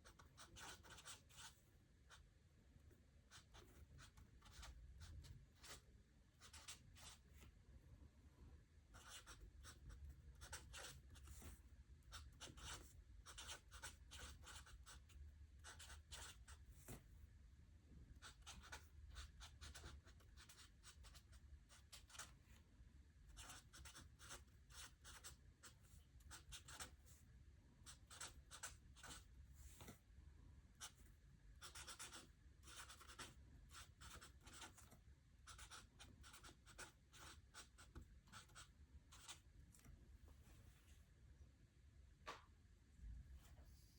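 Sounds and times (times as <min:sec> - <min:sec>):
pen scratching on paper: 0:00.0 - 0:02.2, 0:03.3 - 0:05.8, 0:06.4 - 0:07.2, 0:09.0 - 0:17.0, 0:18.2 - 0:22.4, 0:23.3 - 0:27.1, 0:27.8 - 0:29.9, 0:30.8 - 0:39.4.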